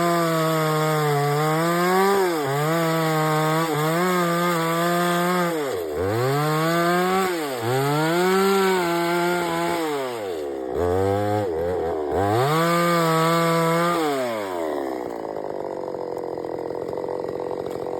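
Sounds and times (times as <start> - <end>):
chainsaw running: 0.0 - 17.9.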